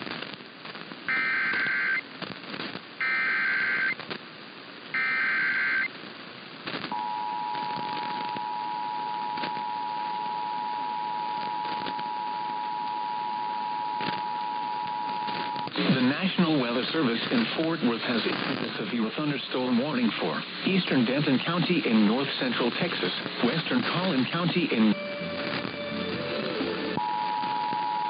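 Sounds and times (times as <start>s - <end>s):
radio hiss: 0.0s - 28.0s
screechy digital data tones: 3.0s - 4.0s, 5.0s - 5.9s.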